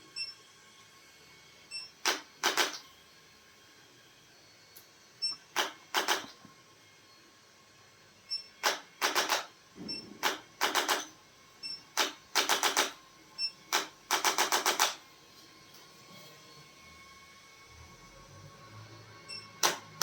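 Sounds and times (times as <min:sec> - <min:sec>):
sharp mechanical clicks: 0:02.0 - 0:02.9, 0:05.3 - 0:06.4, 0:08.6 - 0:13.0, 0:13.7 - 0:15.0, 0:19.6 - 0:20.0.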